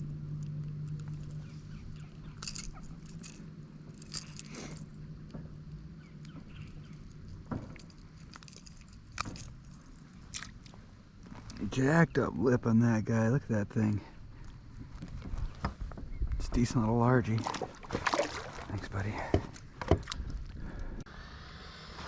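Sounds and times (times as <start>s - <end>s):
low steady hum: 0.0s - 21.8s
light clicks and rattles: 0.3s - 11.6s.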